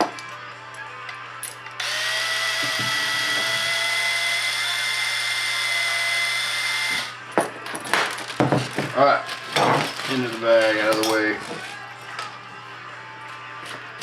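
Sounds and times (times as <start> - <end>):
power drill running: 1.8 - 7.2.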